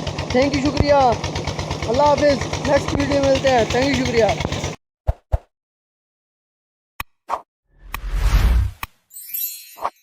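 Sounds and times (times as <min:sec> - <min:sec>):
high glittering shimmer: 0:09.1 - 0:10.0.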